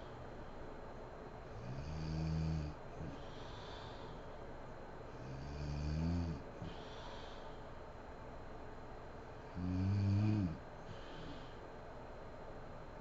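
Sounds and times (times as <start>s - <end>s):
breathy out-breath: 3.0s - 4.4s, 6.6s - 7.8s, 10.8s - 11.7s
woman snoring: 9.5s - 10.6s.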